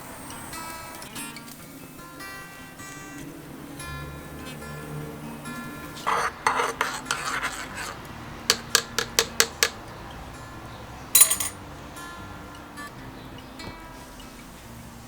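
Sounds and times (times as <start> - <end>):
cutlery scraping on a plate: 5.9 - 9.8, 11.2 - 11.6
cutlery tapping on a plate: 8.5 - 9.8, 11.2 - 11.6.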